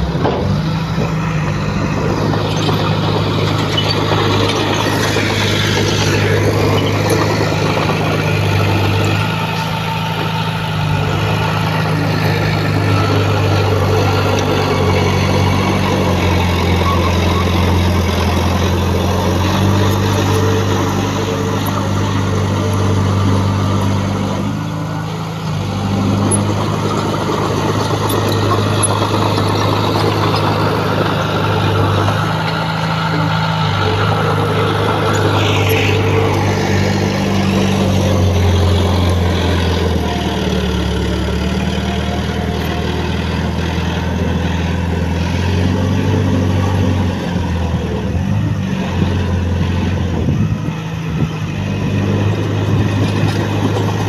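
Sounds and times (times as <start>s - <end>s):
diesel engine of earthmoving machine: 0.0s - 54.0s.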